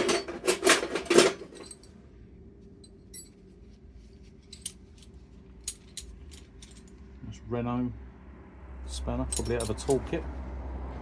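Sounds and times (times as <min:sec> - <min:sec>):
metal spanners clinking: 0:00.0 - 0:01.9, 0:09.3 - 0:10.2.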